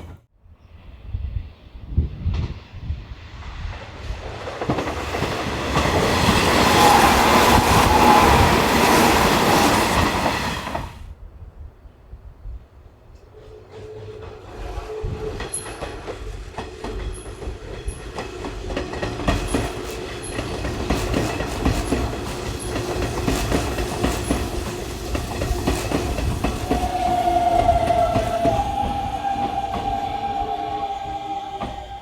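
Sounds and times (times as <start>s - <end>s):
wheels clacking over rail joints: 4.1s - 11.0s, 13.5s - 32.0s
electric train running: 4.2s - 11.0s, 13.3s - 32.0s
steady high tone: 24.2s - 32.0s.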